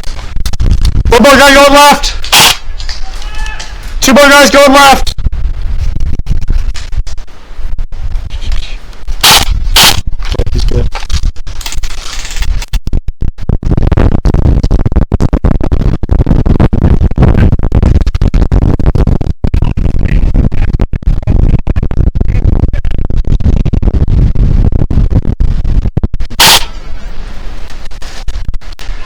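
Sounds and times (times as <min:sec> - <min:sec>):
wind buffeting microphone: 0:00.0 - 0:29.0.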